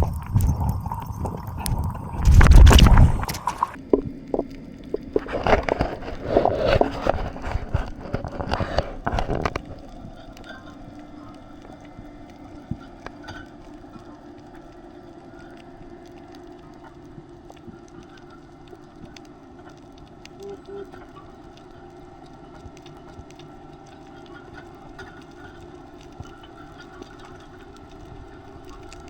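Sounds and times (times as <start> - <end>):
underwater hum: 0.0 - 29.0
water splashing and bubbling: 0.0 - 29.0.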